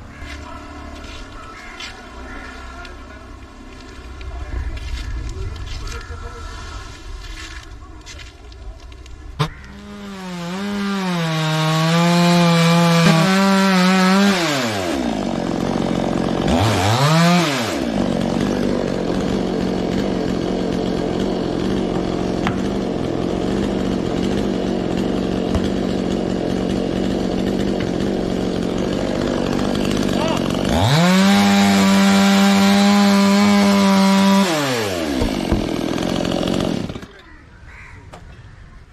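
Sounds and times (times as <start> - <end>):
chainsaw cutting wood: 9.4 - 37.2.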